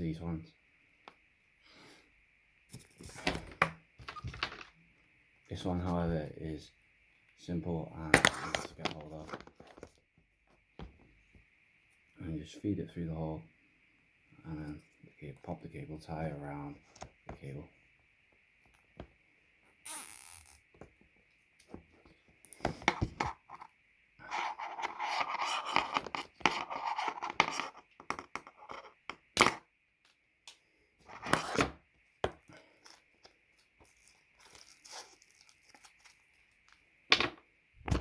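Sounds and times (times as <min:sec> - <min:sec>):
cable ties scraping and ripping: 0:32.8 - 0:36.7.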